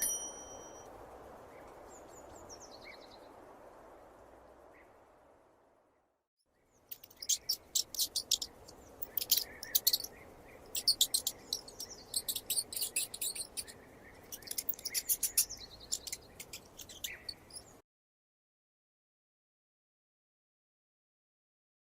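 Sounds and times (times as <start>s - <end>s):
faint steady hiss: 0.0s - 17.8s
mouse squeaking: 6.9s - 17.8s.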